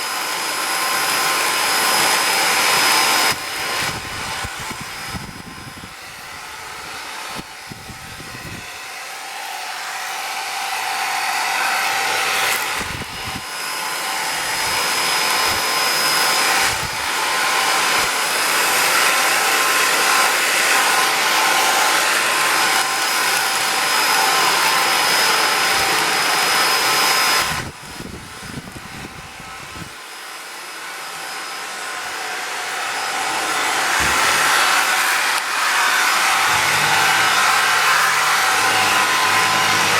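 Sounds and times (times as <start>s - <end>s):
cordless vacuum cleaner running: 0.0s - 39.9s.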